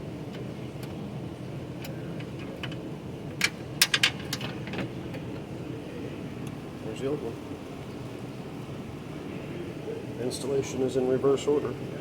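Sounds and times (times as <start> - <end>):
low background hum: 0.0 - 12.0
clicks and clacks of handled lock: 1.8 - 2.8, 3.4 - 5.2.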